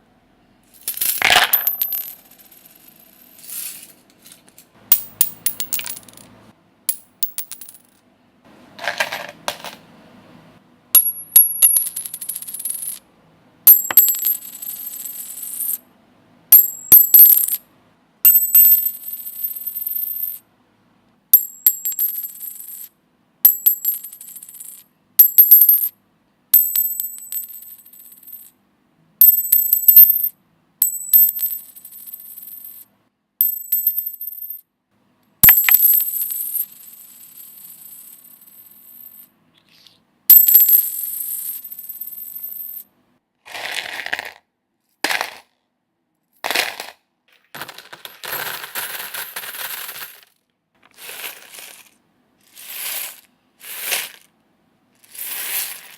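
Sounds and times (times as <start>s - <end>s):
metallic coin clinks: 0.8s - 4.0s, 4.9s - 6.3s, 6.9s - 8.0s, 11.0s - 13.0s, 13.7s - 15.8s, 16.5s - 17.6s, 18.2s - 20.4s, 21.4s - 25.9s, 26.6s - 28.5s, 29.2s - 32.8s, 33.4s - 34.6s, 35.4s - 39.3s, 40.3s - 42.8s.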